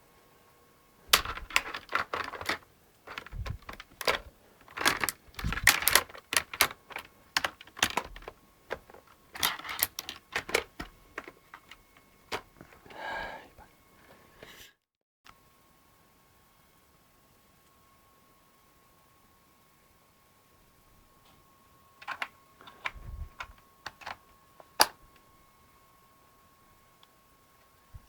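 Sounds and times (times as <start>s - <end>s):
laptop keyboard typing: 1.1s - 12.5s, 22.0s - 25.0s.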